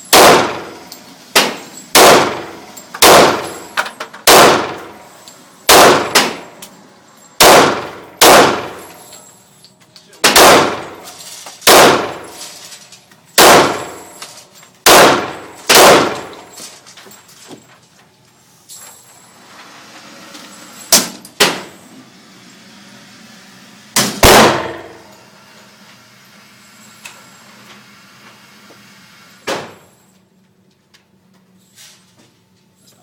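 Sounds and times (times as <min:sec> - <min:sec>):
pistol shots: 0:00.1 - 0:05.0, 0:05.7 - 0:06.6, 0:07.4 - 0:09.0, 0:10.2 - 0:12.4, 0:13.4 - 0:14.1, 0:14.8 - 0:16.5, 0:24.0 - 0:25.1.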